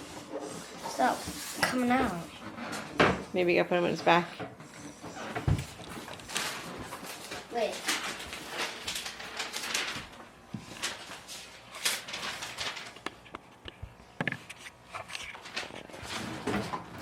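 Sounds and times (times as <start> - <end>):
packaging rustling and scraping: 4.9 - 17.0.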